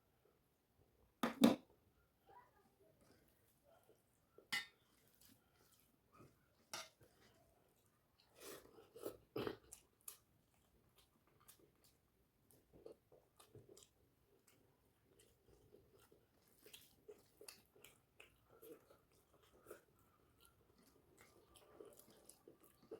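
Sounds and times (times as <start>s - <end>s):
person chewing food: 3.0s - 22.9s.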